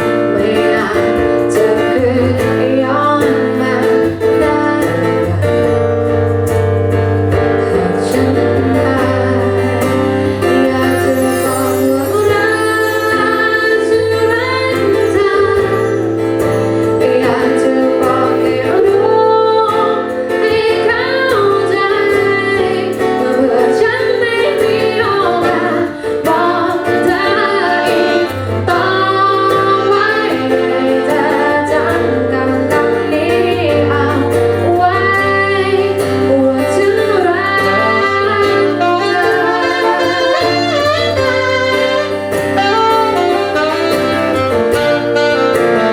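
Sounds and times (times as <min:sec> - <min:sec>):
band music: 0:00.0 - 0:45.9
woman singing: 0:00.0 - 0:45.9.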